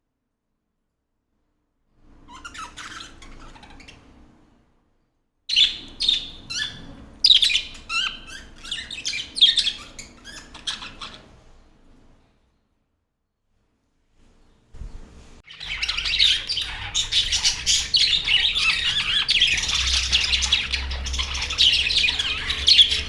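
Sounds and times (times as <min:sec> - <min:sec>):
budgerigars chirping: 0:02.3 - 0:04.0, 0:05.5 - 0:11.3, 0:15.5 - 0:23.0.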